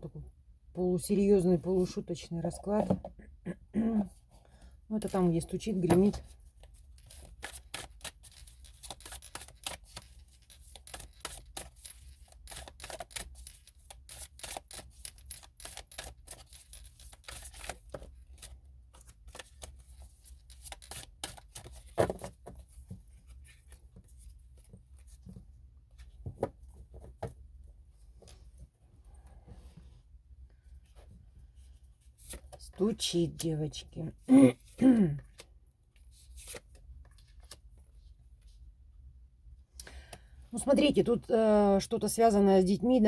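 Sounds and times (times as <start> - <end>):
papery clicks and rustles: 6.5 - 25.4
cards shuffling: 7.0 - 22.6.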